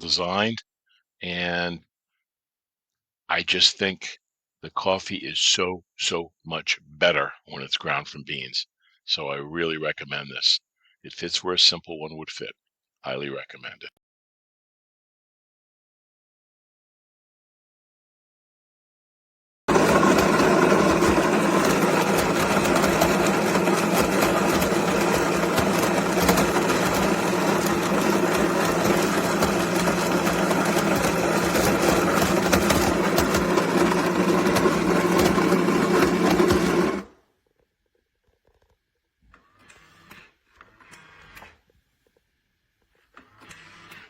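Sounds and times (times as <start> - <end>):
coffee grinder grinding beans: 19.7 - 37.2.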